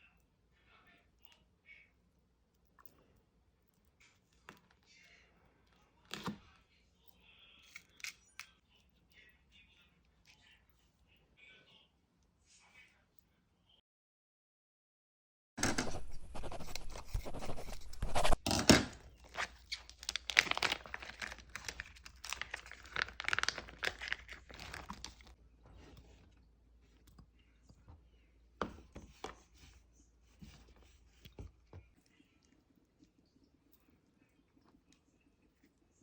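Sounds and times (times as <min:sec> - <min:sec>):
rustling and crinkling packaging: 0:15.6 - 0:26.5.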